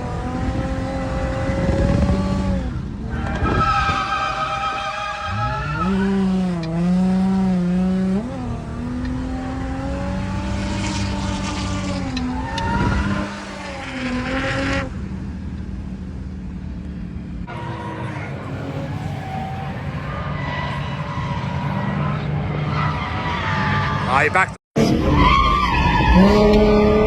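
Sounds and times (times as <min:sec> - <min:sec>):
car engine revving high: 0:00.0 - 0:15.4
tyre noise: 0:00.0 - 0:20.0.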